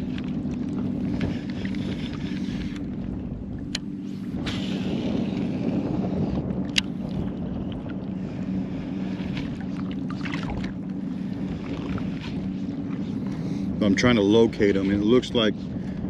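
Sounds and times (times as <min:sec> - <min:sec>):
low motor hum: 0:00.0 - 0:16.0
water noise: 0:00.0 - 0:16.0
wind: 0:00.0 - 0:16.0.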